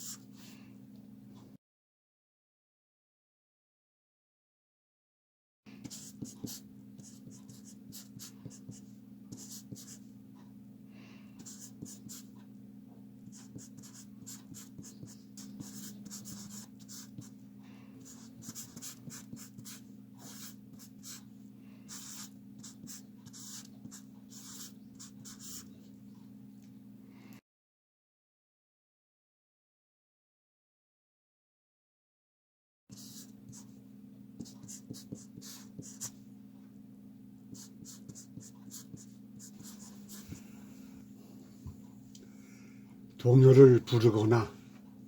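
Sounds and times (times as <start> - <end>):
pen scratching on paper: 0.0 - 0.3, 5.8 - 10.0, 11.4 - 12.3, 13.3 - 17.4, 18.0 - 21.3, 21.9 - 25.7, 32.9 - 33.7, 34.4 - 36.2, 37.5 - 40.4
steady low hum: 5.7 - 27.4, 32.9 - 45.0.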